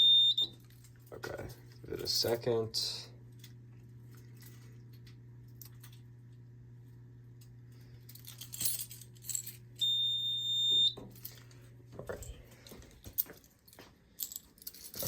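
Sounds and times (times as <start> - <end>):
high-pitched alarm panel beep: 0.0 - 0.6, 9.8 - 11.0
low steady hum: 0.0 - 15.0
metallic clinks of keys: 8.0 - 9.9, 11.1 - 15.0.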